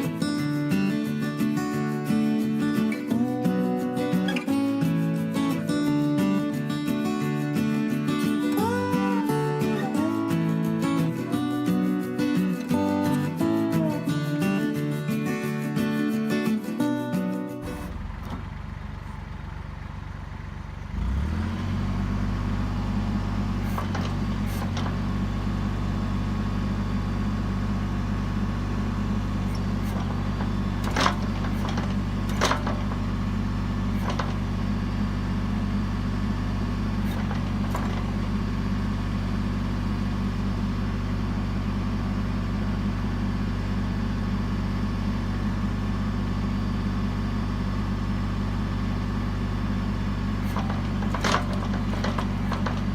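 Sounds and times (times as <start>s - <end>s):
tractor diesel engine running: 0.0s - 52.9s
knocks and clanks: 23.6s - 25.1s, 29.5s - 33.1s, 33.9s - 34.5s, 37.0s - 38.2s, 50.4s - 52.9s.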